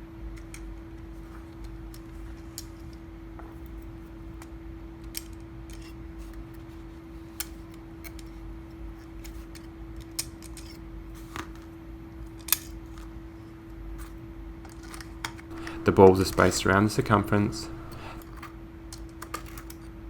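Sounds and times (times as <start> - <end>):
steady low hum: 15.5 - 18.5.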